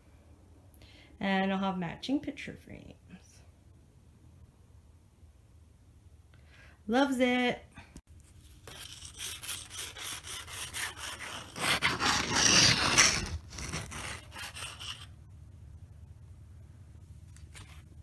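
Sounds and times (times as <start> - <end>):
sandpaper rubbing on wood: 8.7 - 15.1.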